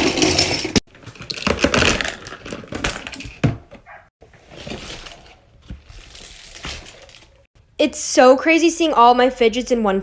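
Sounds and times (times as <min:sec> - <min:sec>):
plastic toys clattering: 0:00.0 - 0:07.5.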